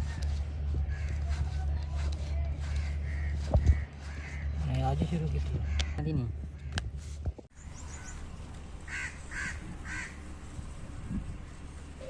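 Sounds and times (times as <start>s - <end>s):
low hum: 0.0s - 12.0s
bird calls: 2.6s - 4.8s, 7.6s - 8.3s.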